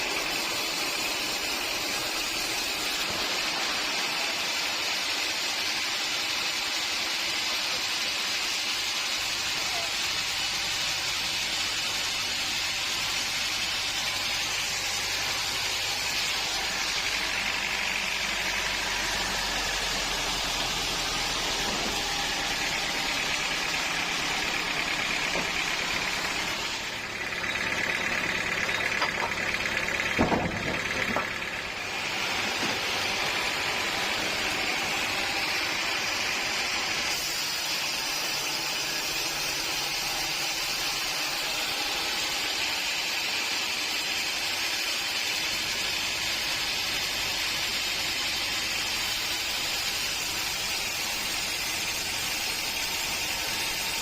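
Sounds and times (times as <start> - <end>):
sawmill machinery running: 0.0 - 54.0
sharp knocks: 30.1 - 31.4.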